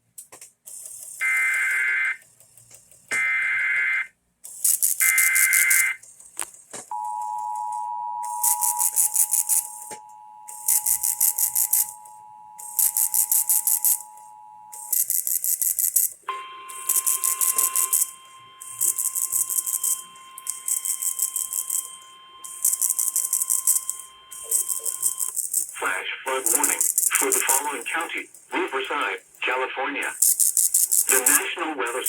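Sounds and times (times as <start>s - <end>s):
rapid high-pitched rattling ticks: 4.5s - 5.8s, 10.6s - 11.9s, 12.7s - 14.0s, 14.8s - 16.2s, 18.7s - 25.8s, 26.4s - 28.5s, 30.2s - 31.4s
two-tone alert signal: 5.0s - 6.0s, 6.9s - 15.2s, 16.3s - 28.8s
steady alert tone: 8.2s - 30.1s.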